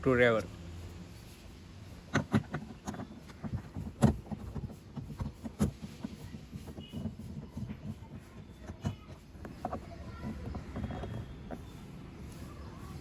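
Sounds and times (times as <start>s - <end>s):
screwdriver clicking on plastic: 2.1s - 11.7s.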